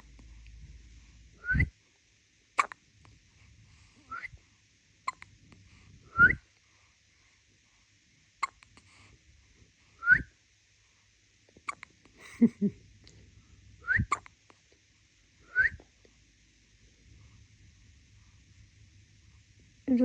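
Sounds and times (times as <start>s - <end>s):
woman whistling short rising notes: 1.4s - 1.7s, 6.1s - 6.4s, 10.0s - 10.3s, 15.5s - 15.8s
baby hiccuping: 2.6s - 2.8s, 5.1s - 5.3s, 8.4s - 8.7s, 11.6s - 11.9s.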